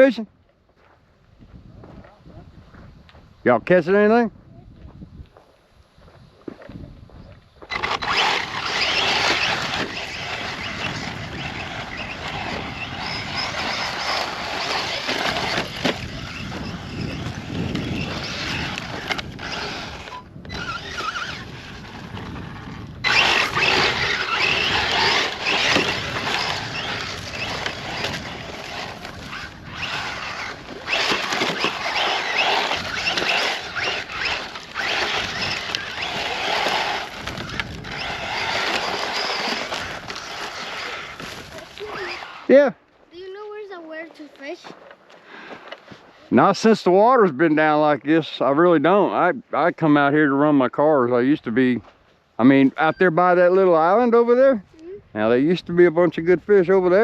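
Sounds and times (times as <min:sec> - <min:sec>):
tyres on loose ground: 0:00.0 - 0:57.0
electric toy truck motor: 0:07.6 - 0:42.6.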